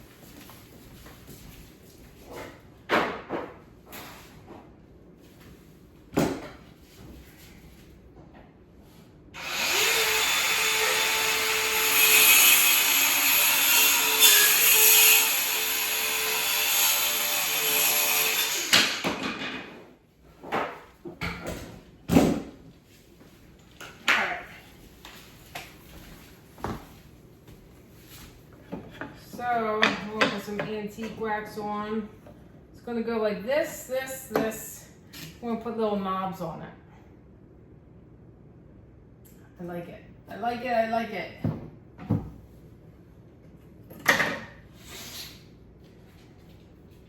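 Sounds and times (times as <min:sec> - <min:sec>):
power saw cutting wood: 0:09.4 - 0:19.2.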